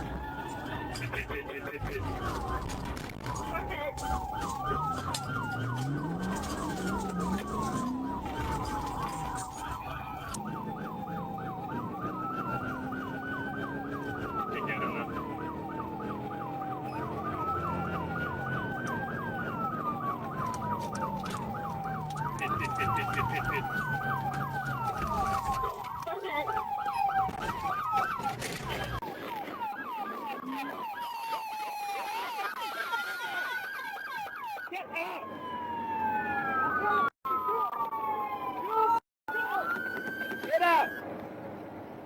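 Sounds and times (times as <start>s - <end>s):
vehicle driving at speed: 0.0s - 29.9s
police siren wailing: 0.0s - 41.2s.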